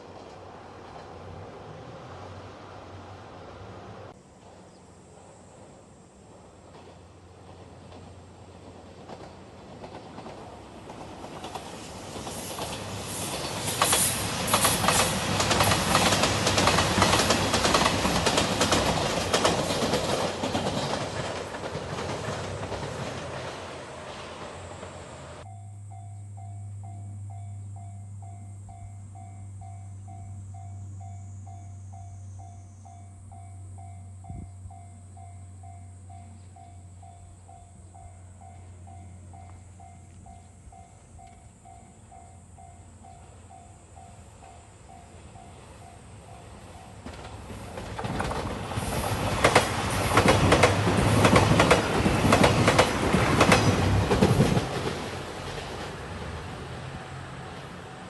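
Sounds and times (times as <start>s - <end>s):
wheels clacking over rail joints: 0.0s - 1.9s, 4.4s - 25.4s, 37.5s - 56.8s
diesel train rumble: 0.0s - 58.0s
steady low hum: 25.3s - 46.9s
level crossing warning bell: 25.4s - 47.1s.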